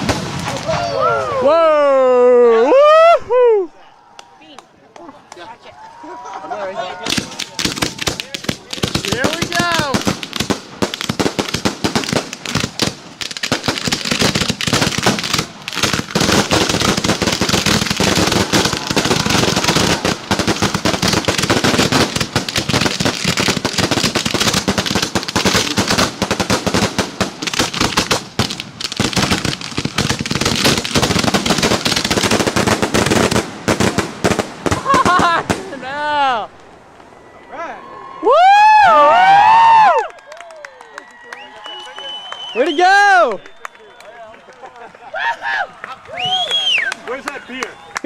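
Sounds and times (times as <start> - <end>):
fireworks bangs and crackles: 0.0 - 1.5, 7.0 - 36.0.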